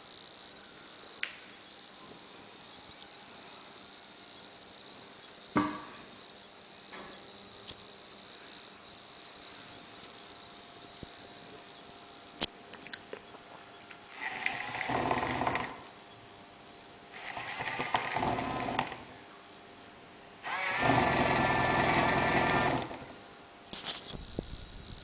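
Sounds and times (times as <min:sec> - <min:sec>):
small electric motor running: 0:14.1 - 0:15.9, 0:17.1 - 0:19.1, 0:20.4 - 0:23.2.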